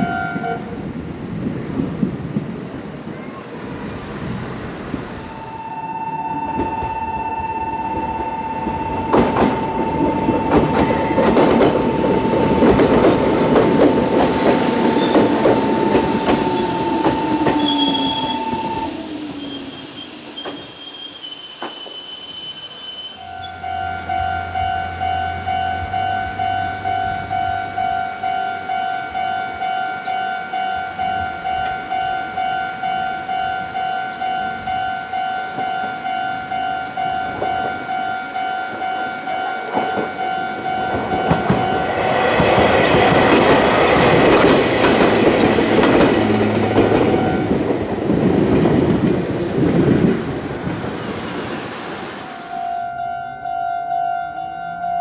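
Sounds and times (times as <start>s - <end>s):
electric train rumbling over rails: 0.0s - 55.0s
level crossing alarm clanging: 5.3s - 22.0s, 23.2s - 47.6s.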